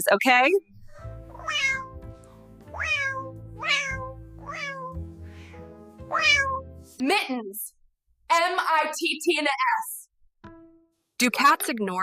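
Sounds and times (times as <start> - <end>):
cat meowing: 0.9 - 5.0, 6.0 - 6.7
background music with held notes: 1.0 - 7.0, 10.4 - 10.9.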